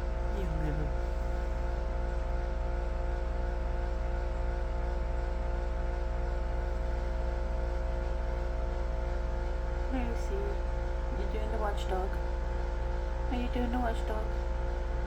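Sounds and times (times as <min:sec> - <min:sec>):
mechanical hum with low drone: 0:00.0 - 0:15.0.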